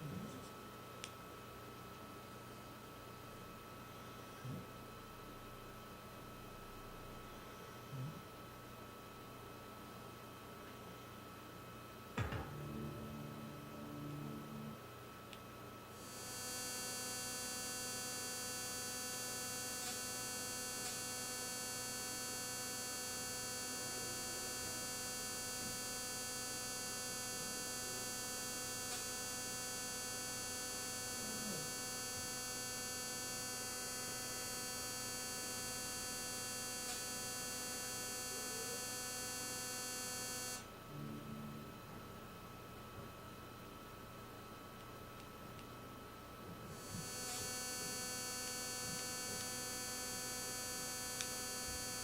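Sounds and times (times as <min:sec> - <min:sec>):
electronic buzz from speakers: 0:12.1 - 0:43.0, 0:46.5 - 0:52.0.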